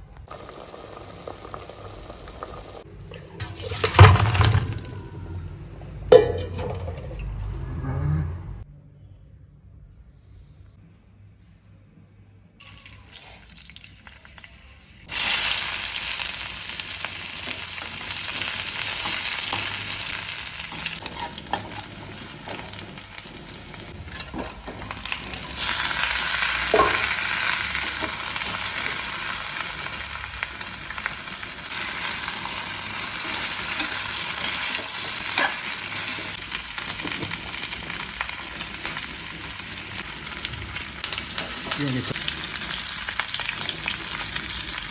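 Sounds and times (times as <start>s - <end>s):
pork sizzling in a pan: 0.3s - 2.9s, 12.6s - 44.9s.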